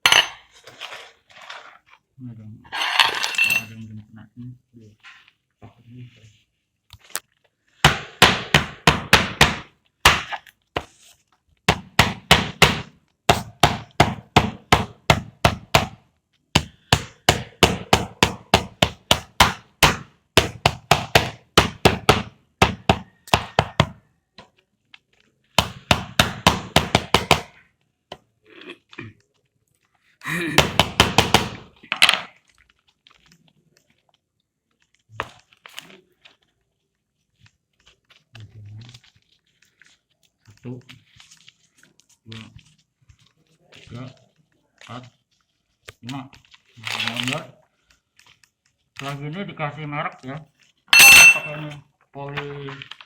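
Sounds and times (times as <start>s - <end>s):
rapid sharp knocks: 7.8s - 10.3s, 11.7s - 16.0s.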